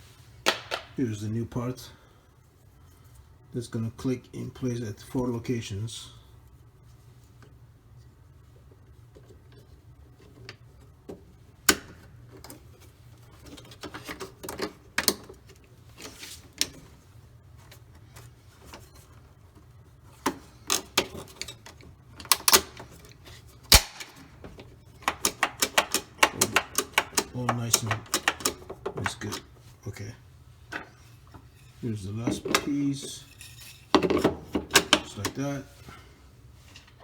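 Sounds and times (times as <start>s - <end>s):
sharp clicks and knocks: 23.7s - 29.5s.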